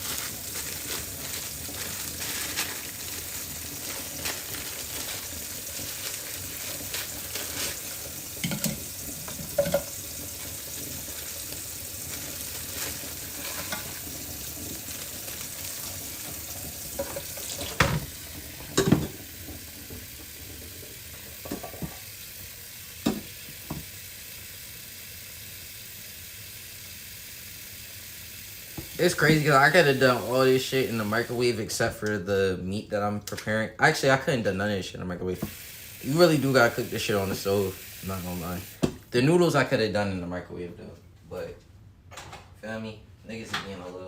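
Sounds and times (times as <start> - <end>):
food sizzling in a pan: 0.0 - 31.6, 35.3 - 39.2.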